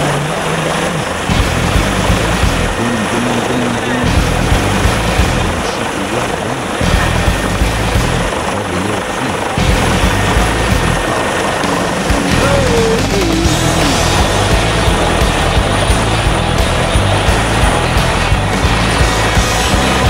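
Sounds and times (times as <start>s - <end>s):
helicopter rotor and turbine: 0.0s - 20.0s.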